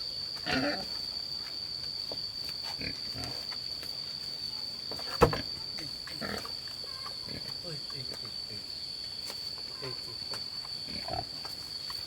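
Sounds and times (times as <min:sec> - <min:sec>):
sharp knock: 0:05.2 - 0:05.4.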